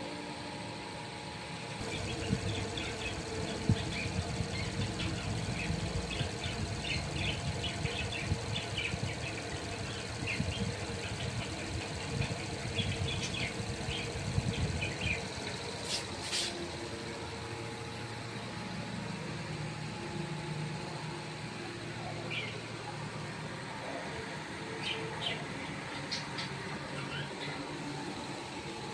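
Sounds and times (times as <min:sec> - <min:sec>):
brief hissing bursts: 0:15.8 - 0:16.6.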